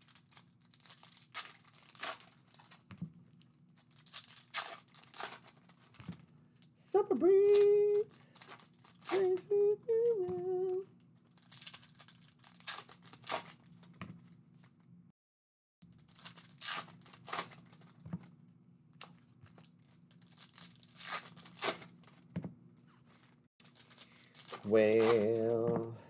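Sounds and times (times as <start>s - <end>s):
foil packs tearing and crinkling: 0.0s - 2.9s, 3.8s - 6.2s, 7.3s - 9.5s, 11.3s - 13.7s, 16.0s - 18.0s, 19.5s - 22.1s, 23.6s - 25.6s
person humming: 7.0s - 8.1s, 9.1s - 10.9s, 24.6s - 26.0s.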